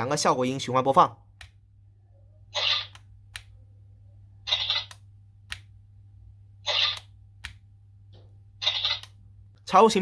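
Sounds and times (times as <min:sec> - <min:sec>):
toy electronic sound effects: 0:02.5 - 0:03.1, 0:04.4 - 0:05.0, 0:06.6 - 0:07.2, 0:08.6 - 0:09.2.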